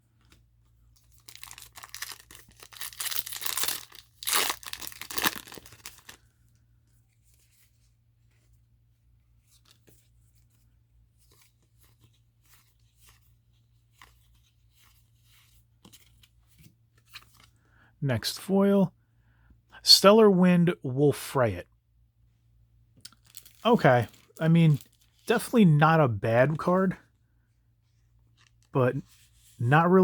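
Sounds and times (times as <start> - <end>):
foil wrapper tearing and crinkling: 1.2 - 6.2, 23.2 - 23.6.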